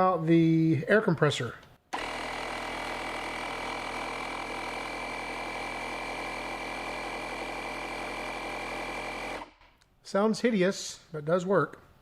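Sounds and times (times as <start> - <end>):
air compressor motor buzzing: 1.9 - 9.7.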